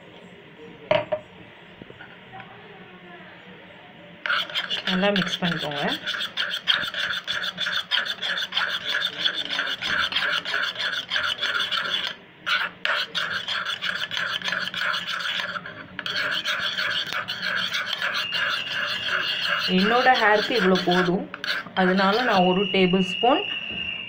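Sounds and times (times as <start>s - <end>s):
spoon stirring and scraping bowl: 4.2s - 22.8s.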